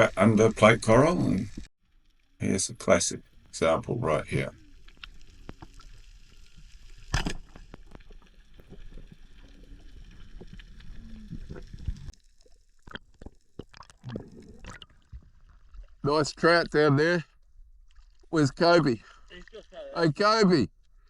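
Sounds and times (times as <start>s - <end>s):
small crackling clicks: 4.7s - 14.0s.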